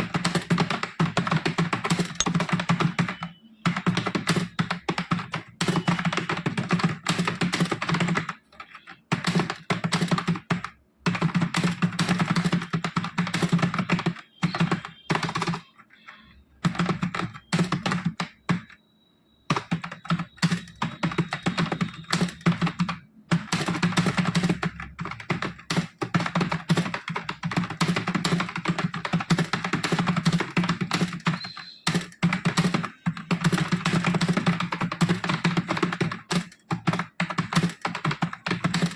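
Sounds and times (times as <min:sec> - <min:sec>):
fast typing on keyboard: 0:00.0 - 0:18.8, 0:19.5 - 0:38.9.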